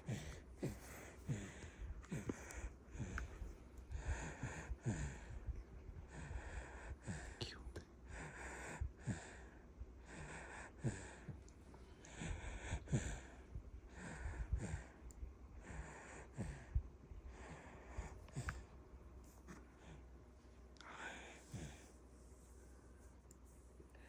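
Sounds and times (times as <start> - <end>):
baby breathing in sleep: 0.0 - 7.4, 12.0 - 15.0.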